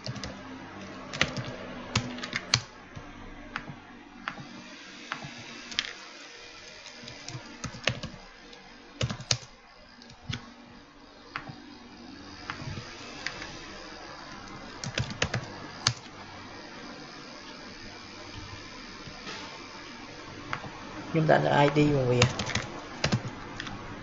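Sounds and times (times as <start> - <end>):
typing on computer keyboard: 0.0 - 2.7, 6.8 - 8.2, 9.0 - 10.4, 14.8 - 16.1, 22.2 - 23.7.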